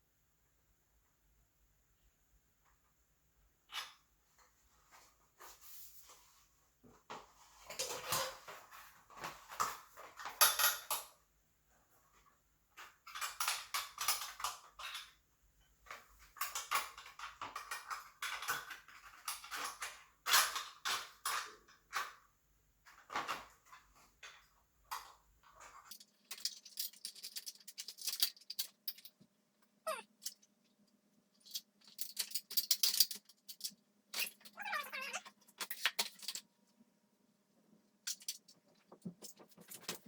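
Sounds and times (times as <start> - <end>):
metal parts clattering: 12.8 - 15.1, 25.6 - 29.2, 31.4 - 36.4, 38.0 - 38.5.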